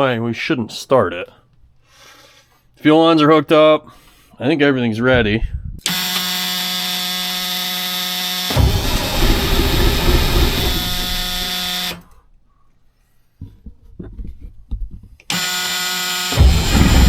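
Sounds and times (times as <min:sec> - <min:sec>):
starter motor whining: 0:05.9 - 0:12.2, 0:15.3 - 0:17.0
diesel engine rough rumble: 0:08.5 - 0:11.7, 0:16.5 - 0:17.0.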